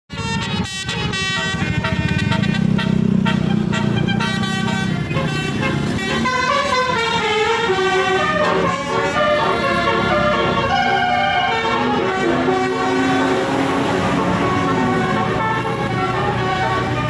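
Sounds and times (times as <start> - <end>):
bus engine rumble: 0.1 - 17.0
multi-tone air horn melody: 0.1 - 17.0.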